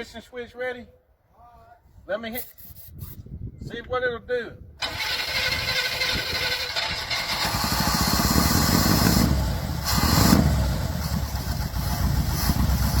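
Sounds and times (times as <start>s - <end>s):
engine running rough: 4.8s - 13.0s.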